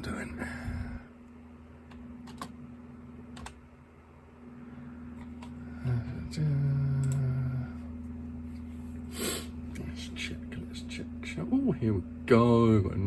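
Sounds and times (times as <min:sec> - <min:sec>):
low electrical hum: 0:00.0 - 0:13.0
computer clicks: 0:01.9 - 0:02.6, 0:07.0 - 0:07.3.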